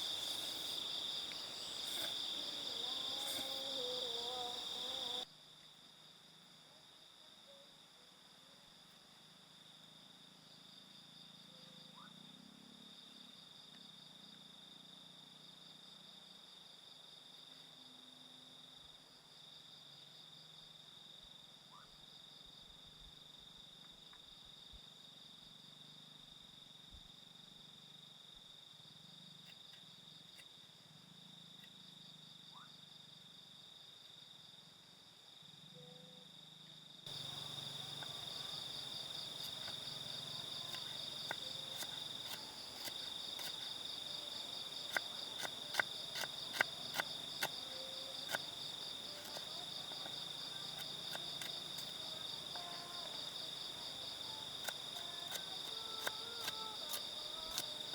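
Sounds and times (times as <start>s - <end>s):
crickets trilling: 0.0s - 5.3s, 36.4s - 57.9s.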